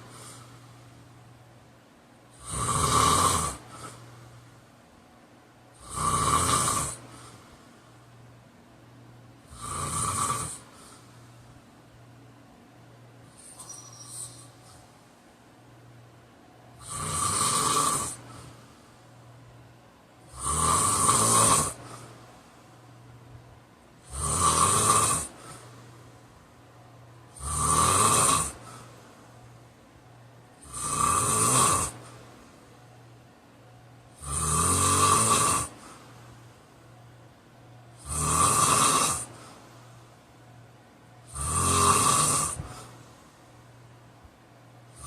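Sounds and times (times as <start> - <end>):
quiet breathing: 0.0 - 1.6, 3.5 - 4.8, 6.9 - 8.3, 10.4 - 12.0, 13.2 - 15.8, 18.0 - 19.6, 21.7 - 23.2, 25.2 - 27.6, 28.4 - 30.7, 31.9 - 34.1, 35.6 - 38.0, 39.1 - 40.9, 42.4 - 45.0
man snoring: 2.4 - 4.0, 5.8 - 7.4, 9.5 - 11.0, 16.8 - 18.6, 20.3 - 22.1, 24.0 - 25.7, 27.3 - 28.9, 30.6 - 32.2, 34.1 - 36.0, 38.0 - 39.6, 41.3 - 43.0.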